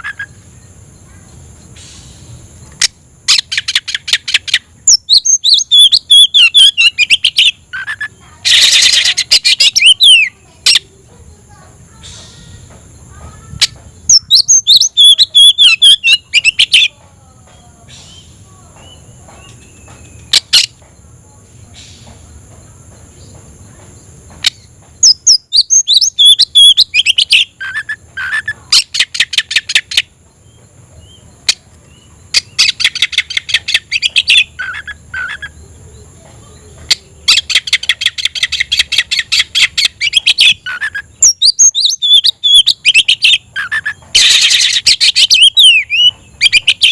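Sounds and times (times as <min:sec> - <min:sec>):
bird singing whistled phrases: 0:03.3 - 0:10.8, 0:13.6 - 0:16.9, 0:25.0 - 0:30.1, 0:36.9 - 0:46.9.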